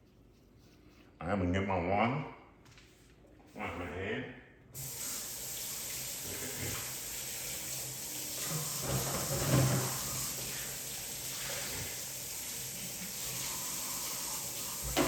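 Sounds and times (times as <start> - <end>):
tap running over washing hands: 4.8 - 15.0.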